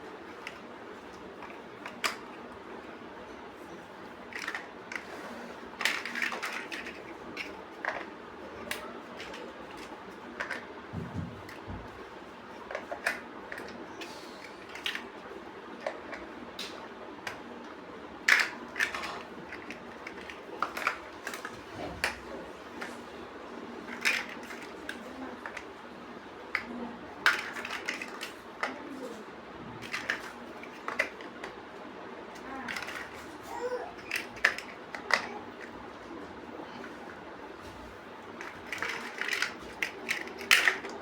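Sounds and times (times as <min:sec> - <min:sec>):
plastic bricks clicking: 0:34.0 - 0:35.4, 0:38.4 - 0:41.0.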